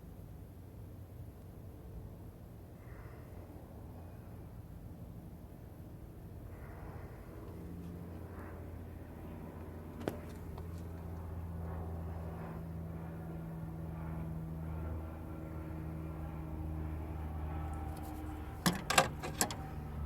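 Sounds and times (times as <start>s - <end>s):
car engine idling: 17.6s - 20.0s
sharp clicks and knocks: 18.0s - 19.6s.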